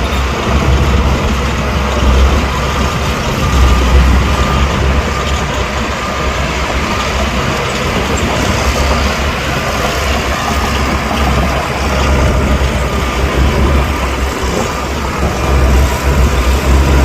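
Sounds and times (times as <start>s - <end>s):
diesel earthmoving machinery running: 0.0s - 17.0s.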